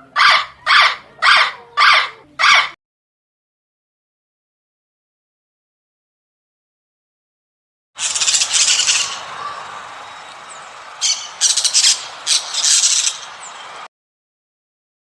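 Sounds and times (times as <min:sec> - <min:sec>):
birds squawking harshly: 0:00.0 - 0:02.8, 0:08.0 - 0:13.9.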